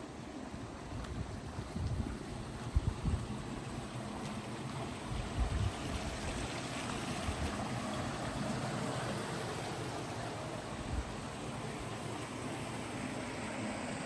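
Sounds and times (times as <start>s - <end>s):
water rushing: 0.0s - 14.0s
wind on microphone: 0.8s - 3.6s, 5.0s - 6.5s.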